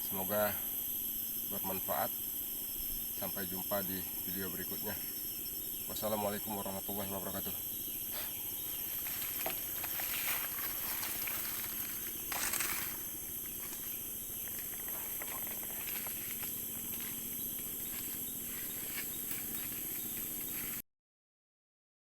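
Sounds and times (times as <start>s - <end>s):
insect chorus: 0.0s - 20.8s
rustle: 8.1s - 20.8s.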